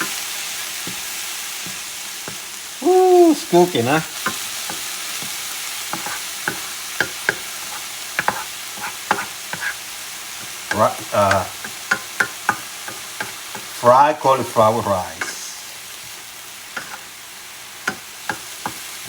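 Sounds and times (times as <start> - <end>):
utensil scraping a pan: 0.0 - 1.0, 5.9 - 13.7, 16.8 - 17.1
food sizzling in a pan: 0.0 - 19.0.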